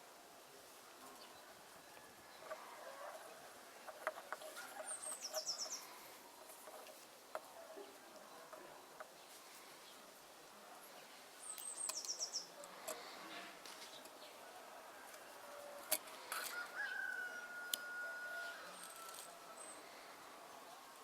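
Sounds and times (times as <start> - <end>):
bird chirping: 1.0 - 10.1, 10.8 - 14.5.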